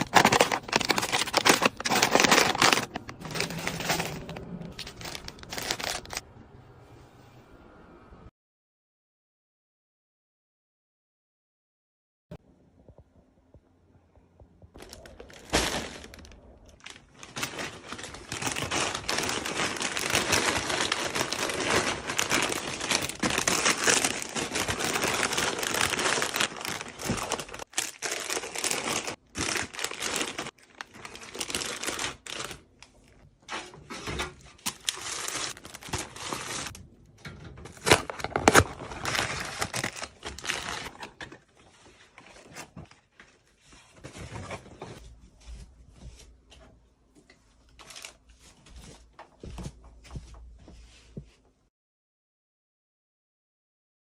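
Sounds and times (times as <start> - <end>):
plastic packaging crinkling: 0.0 - 6.2, 14.8 - 33.2, 34.0 - 36.8, 37.6 - 44.6, 47.7 - 48.6.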